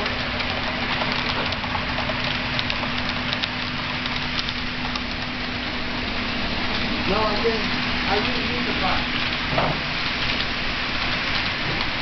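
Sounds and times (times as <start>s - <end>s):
model train running on track: 0.0s - 12.0s
wheels on rail: 0.0s - 12.0s.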